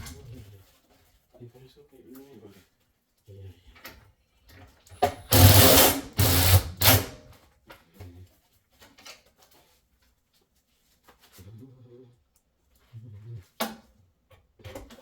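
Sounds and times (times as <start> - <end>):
power drill bursts: 5.0 - 7.2.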